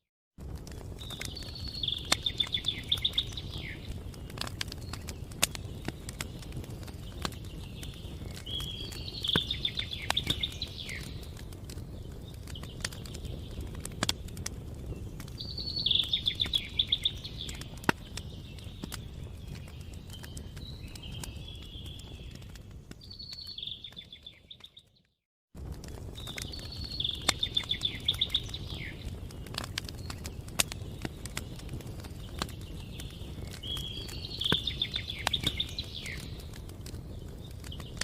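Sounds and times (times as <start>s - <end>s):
campfire crackling and popping: 0.4s - 38.0s
songbird trilling: 8.5s - 11.1s, 15.4s - 17.6s.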